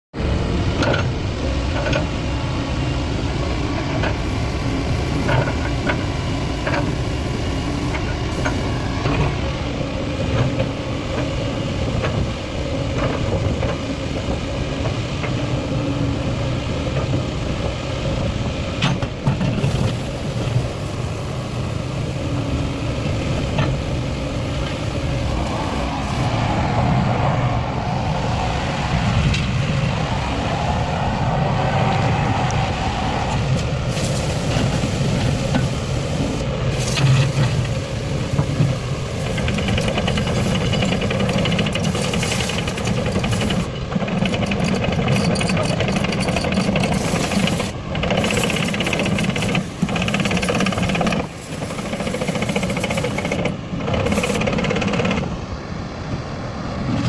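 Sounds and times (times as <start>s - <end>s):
excavator diesel engine running: 0.2s - 57.0s
sharp metallic clicks and knocks: 39.4s - 55.3s.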